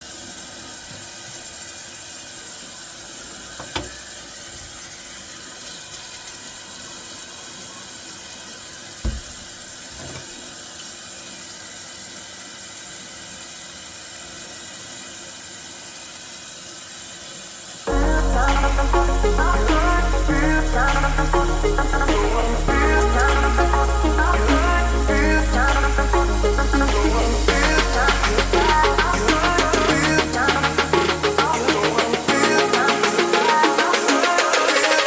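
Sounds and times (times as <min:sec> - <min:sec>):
knocks: 0:09.0 - 0:09.4.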